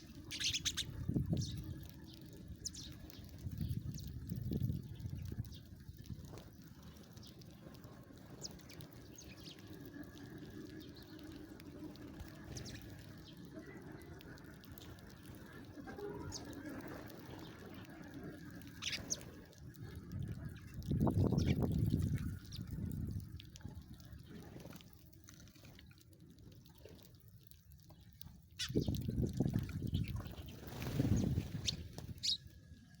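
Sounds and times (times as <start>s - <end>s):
sparrows chirping: 0.0s - 6.1s, 6.8s - 19.4s, 20.4s - 22.7s, 28.6s - 32.5s.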